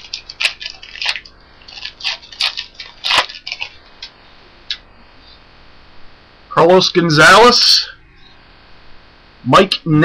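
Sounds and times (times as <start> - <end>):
wrapper crinkling and tearing: 0.0 - 4.1.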